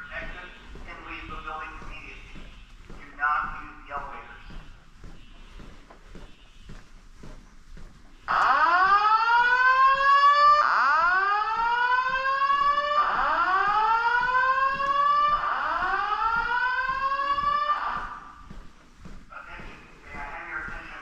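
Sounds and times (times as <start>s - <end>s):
fire alarm whoop tone: 8.3s - 18.1s.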